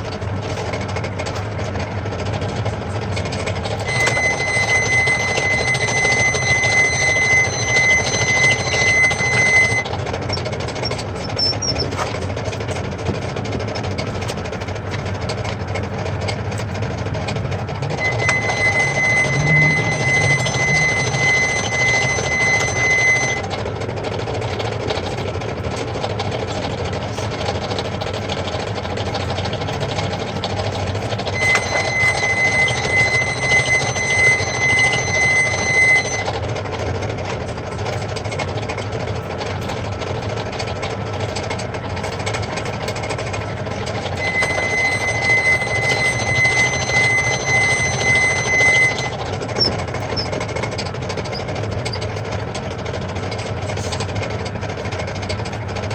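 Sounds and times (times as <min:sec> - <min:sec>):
high-pitched squeal: 0:03.2 - 0:12.9, 0:17.3 - 0:23.6, 0:30.2 - 0:36.5, 0:42.0 - 0:52.2
metal lathe hum: 0:03.6 - 0:12.6, 0:17.2 - 0:23.5, 0:31.1 - 0:36.3, 0:42.4 - 0:52.0.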